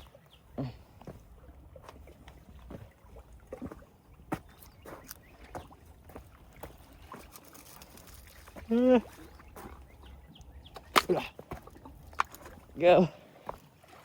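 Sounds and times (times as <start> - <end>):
footsteps on mud: 0.0 - 14.0.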